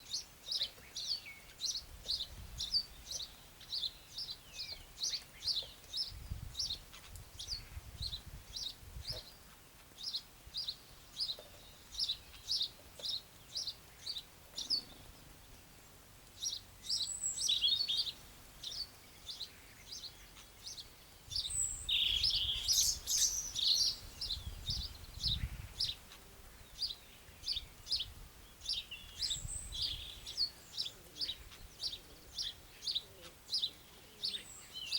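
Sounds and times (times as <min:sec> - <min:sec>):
mixed bird calls: 0:16.4 - 0:34.9.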